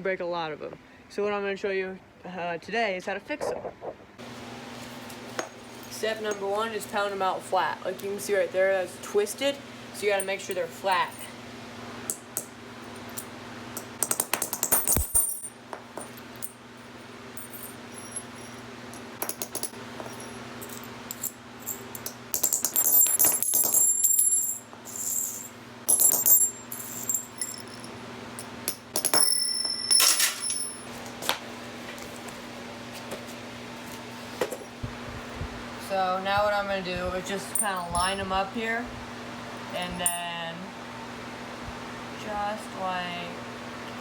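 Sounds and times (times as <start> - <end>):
steady low hum: 3.2 - 44.0.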